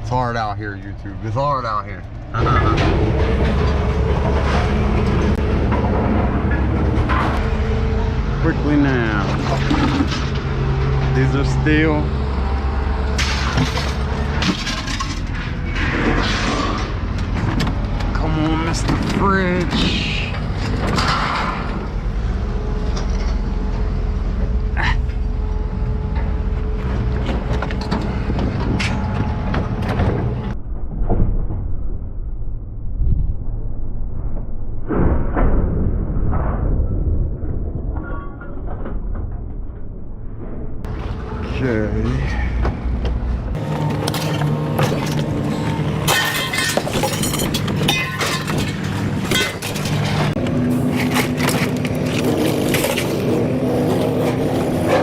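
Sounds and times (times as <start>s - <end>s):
engine hum: 0.0s - 31.0s, 39.1s - 55.0s
steady low rumble: 0.0s - 55.0s
metal scrap clanking: 2.4s - 24.0s, 43.5s - 55.0s
scrap metal clattering: 13.1s - 17.9s, 43.6s - 55.0s
sharp metallic clanks: 43.5s - 53.2s.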